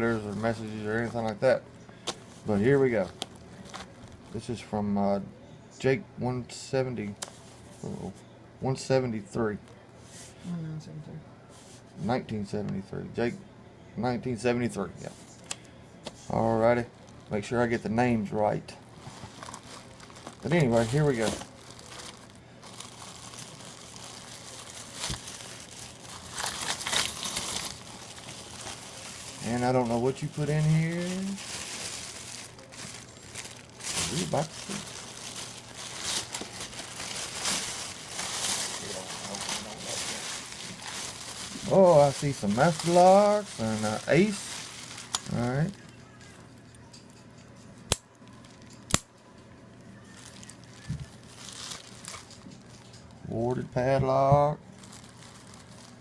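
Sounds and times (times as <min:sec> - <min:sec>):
packaging crinkling: 0:00.0 - 0:04.4, 0:18.8 - 0:46.8, 0:48.2 - 0:48.9, 0:49.9 - 0:53.2, 0:54.6 - 0:56.0.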